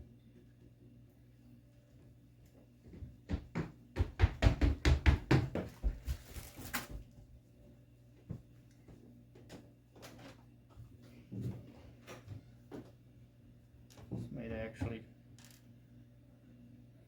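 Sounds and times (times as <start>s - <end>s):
ratchet parts clicking: 15.4s - 15.6s.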